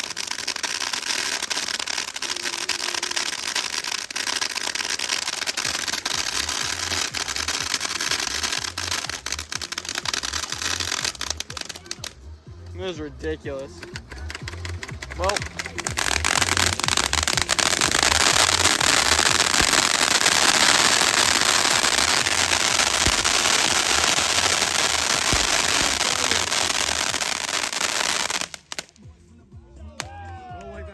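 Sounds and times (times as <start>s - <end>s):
firework bangs: 0.0s - 12.2s, 13.6s - 29.0s
firework crackling: 0.0s - 29.1s.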